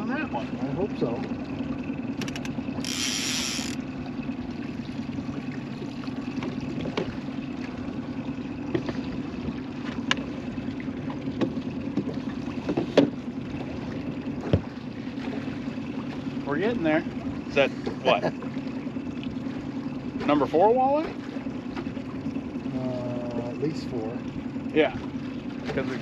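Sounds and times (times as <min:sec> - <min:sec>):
boat motor humming: 0:00.0 - 0:26.0
sharp clicks or knocks: 0:02.2 - 0:02.6.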